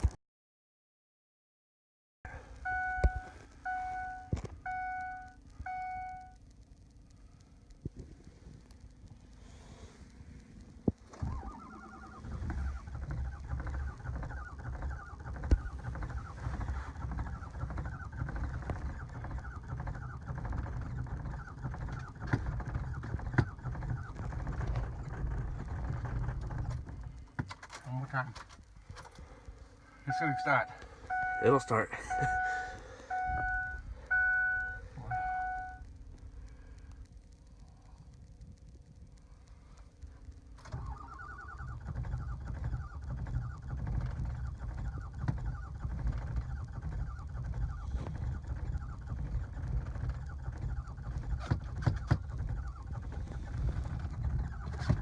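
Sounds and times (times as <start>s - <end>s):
sharp clicks: 2.6s - 55.0s
truck engine cranking on starter: 11.0s - 35.8s, 40.5s - 55.0s.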